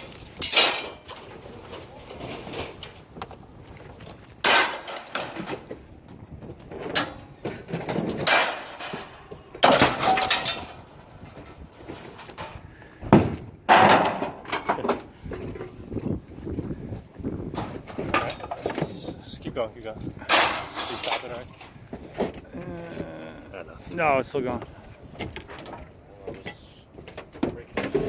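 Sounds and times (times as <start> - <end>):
scrap metal clanging onto pile: 0.0 - 3.1, 4.3 - 5.8, 6.7 - 12.6, 13.7 - 15.7, 17.6 - 19.1, 20.2 - 22.3.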